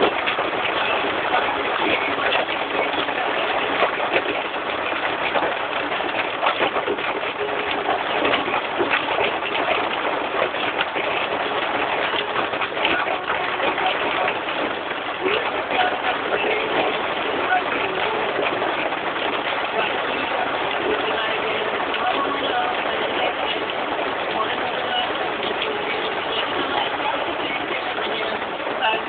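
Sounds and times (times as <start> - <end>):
heavy rain and hail falling: 0.0 - 29.0.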